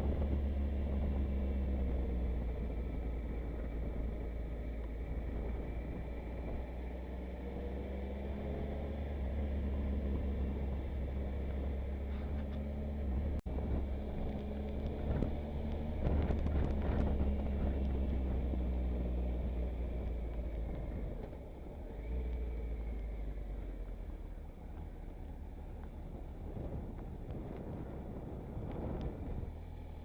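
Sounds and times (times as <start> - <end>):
wind noise on microphone: 0.0 - 2.0, 13.5 - 19.1, 26.0 - 29.6
motorcycle engine running: 0.0 - 30.0.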